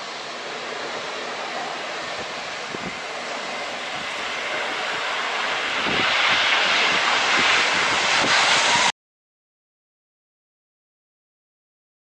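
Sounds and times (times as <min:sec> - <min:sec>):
airplane engine roar: 0:00.0 - 0:09.0.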